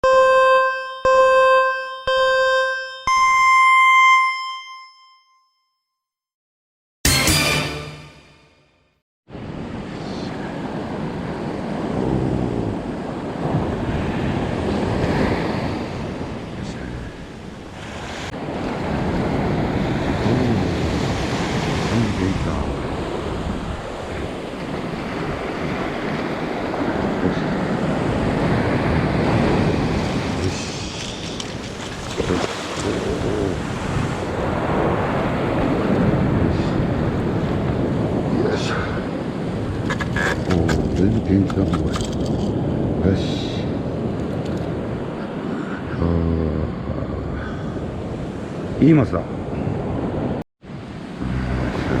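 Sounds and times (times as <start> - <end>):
electronic countdown beeps: 0.0 - 5.5
sea surf washing onto beach: 9.4 - 39.9
wind buffeting microphone: 22.4 - 43.0.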